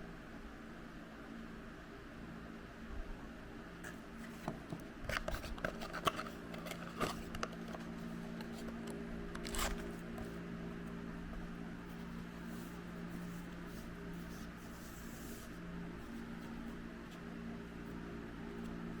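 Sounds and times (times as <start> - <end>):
steady low hum: 0.0 - 19.0
plastic rasping rip: 8.6 - 10.0.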